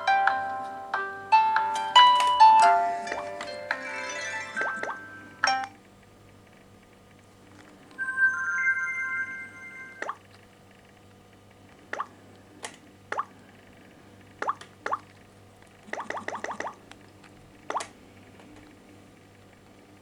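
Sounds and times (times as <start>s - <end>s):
phone alarm tone: 8.0s - 10.2s.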